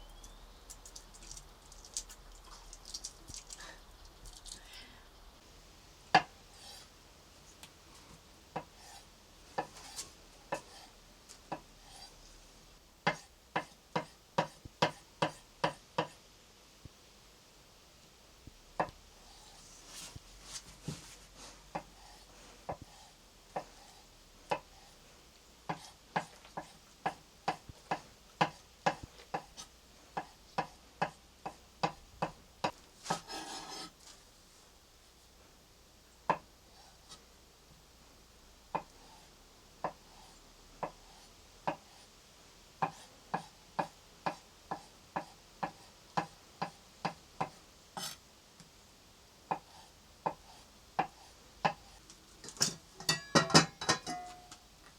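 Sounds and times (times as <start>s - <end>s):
knife scraping board: 33.0s - 34.0s, 48.0s - 48.2s.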